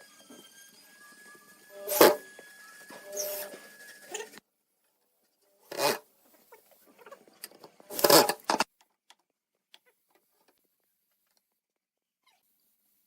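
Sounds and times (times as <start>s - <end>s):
rustling scrapes: 1.8s - 4.4s.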